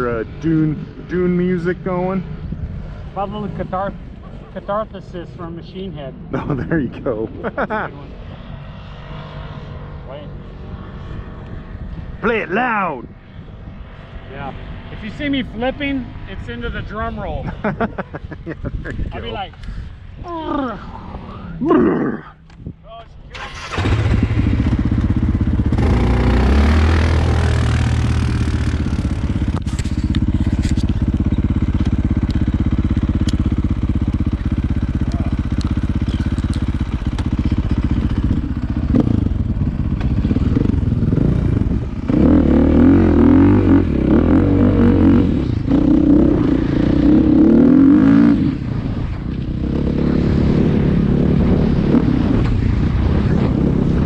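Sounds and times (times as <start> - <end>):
off-road vehicle engine revving: 23.4 - 54.0.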